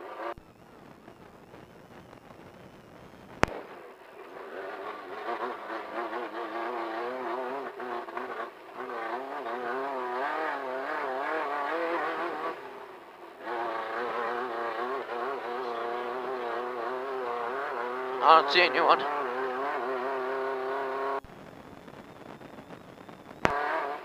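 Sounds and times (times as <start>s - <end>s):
race car engine from inside: 4.1s - 21.2s.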